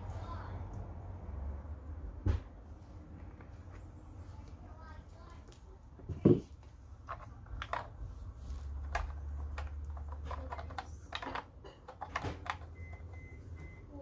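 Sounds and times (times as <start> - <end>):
objects clicking and knocking: 6.1 - 13.3.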